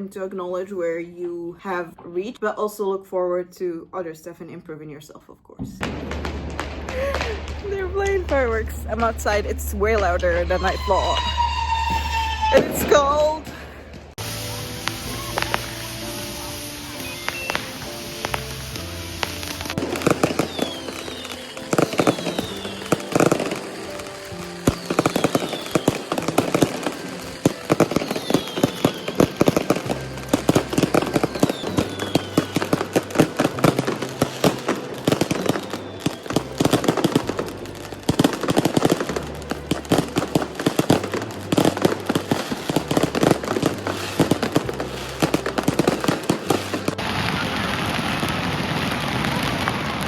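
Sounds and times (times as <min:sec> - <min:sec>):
fireworks crackling bangs: 0:05.7 - 0:50.0
firework whistles: 0:06.6 - 0:08.5, 0:10.0 - 0:13.4, 0:14.1 - 0:50.0
even hiss: 0:14.1 - 0:48.4.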